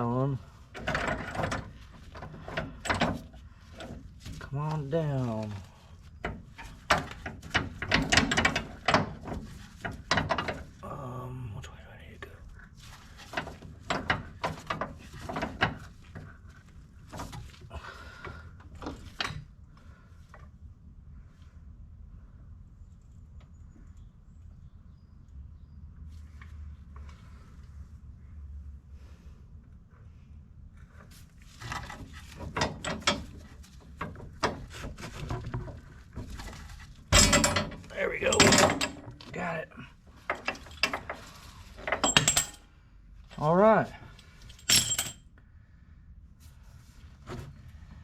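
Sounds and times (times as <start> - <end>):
metal clicks and knocks: 6.2 - 10.8, 31.7 - 39.3
hand tools clanking on metal parts: 32.3 - 35.6, 36.4 - 39.3, 40.2 - 42.6, 44.5 - 45.2.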